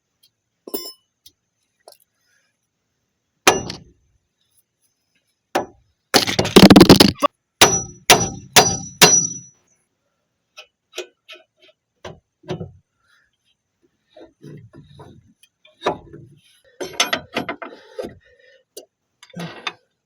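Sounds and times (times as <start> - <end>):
metallic clattering: 6.2 - 7.3
hammer striking steel: 7.6 - 9.5.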